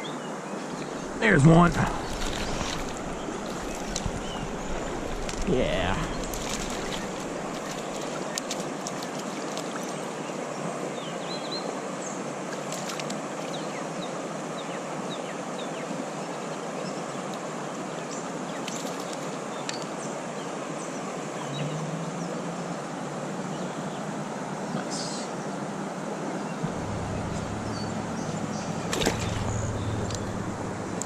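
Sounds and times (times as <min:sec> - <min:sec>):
creek water flowing: 0:00.0 - 0:31.0
faint bird chirps: 0:26.9 - 0:30.6.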